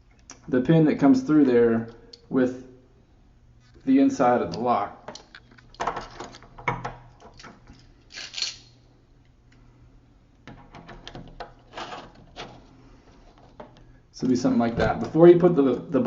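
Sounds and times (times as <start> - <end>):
deadbolt parts clicking: 10.4 - 12.6.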